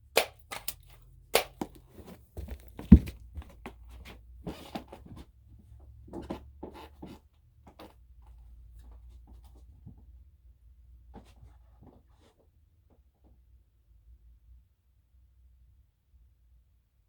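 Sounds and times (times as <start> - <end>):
handling clicks and rustles: 0.4 - 5.3.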